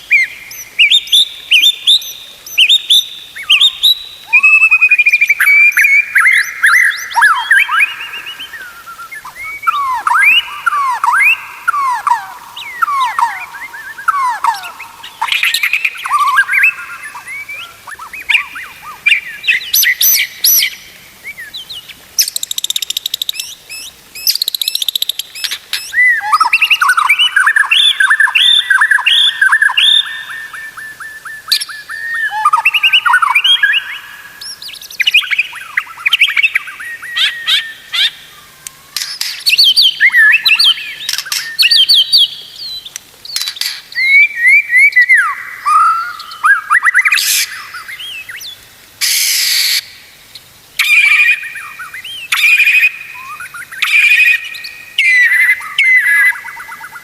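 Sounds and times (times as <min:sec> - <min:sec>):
bird singing whistled phrases: 0:00.0 - 0:50.0, 0:50.8 - 0:57.0.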